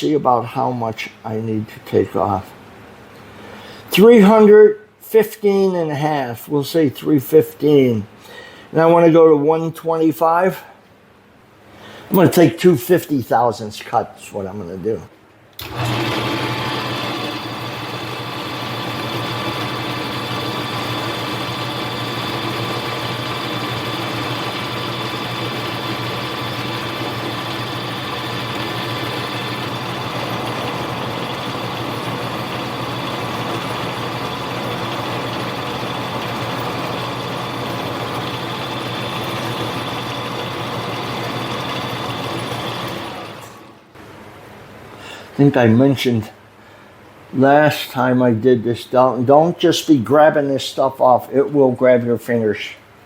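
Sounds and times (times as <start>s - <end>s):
metal lathe motor and gear whine: 15.6s - 43.9s.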